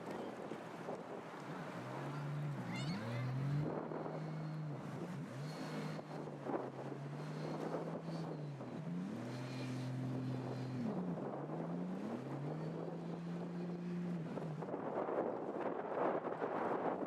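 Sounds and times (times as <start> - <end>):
low engine hum: 0.0 - 17.0
wind buffeting microphone: 0.0 - 17.0.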